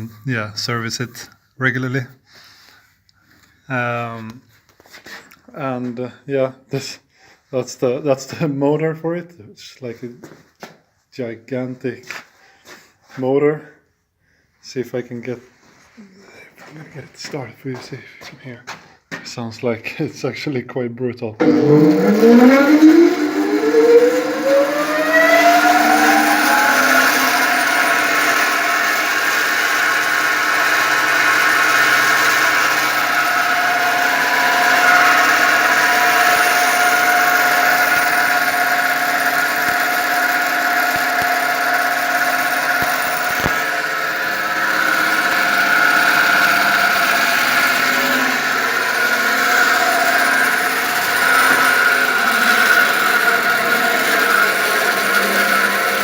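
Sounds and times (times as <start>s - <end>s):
bandsaw motor whining: 21.4s - 56.0s.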